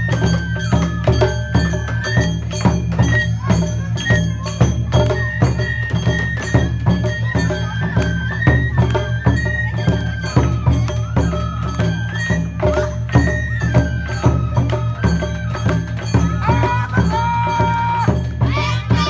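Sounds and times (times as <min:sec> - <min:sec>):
fast percussion beat: 0:00.0 - 0:19.0
high flute melody: 0:00.0 - 0:19.0.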